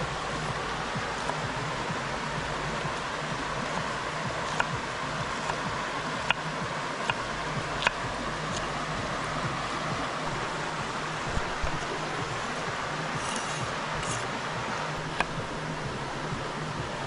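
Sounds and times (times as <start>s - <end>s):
river water flowing: 0.0s - 17.0s.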